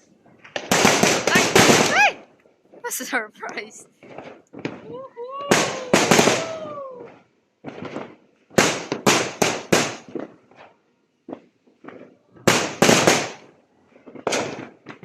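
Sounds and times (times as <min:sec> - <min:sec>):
fireworks and firecrackers banging: 0:00.0 - 0:15.0
small firecracker pops: 0:03.5 - 0:15.0.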